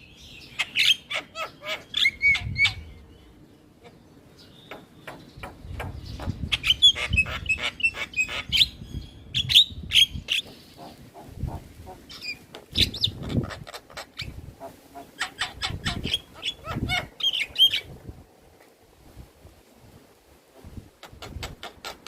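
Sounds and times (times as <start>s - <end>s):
myna bird chattering song: 0.3s - 2.9s, 3.8s - 17.9s.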